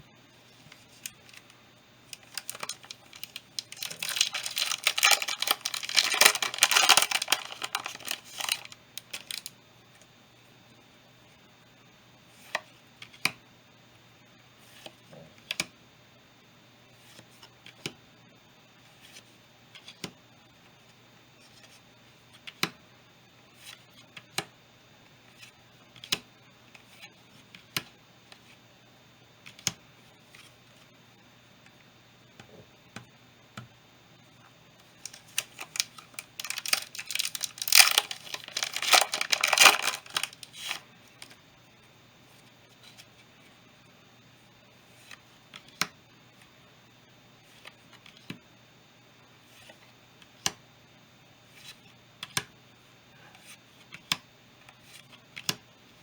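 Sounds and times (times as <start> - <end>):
foil pack crinkling and tearing: 2.1 - 9.5, 35.0 - 41.3
cards snapping: 2.2 - 9.5, 35.1 - 40.8.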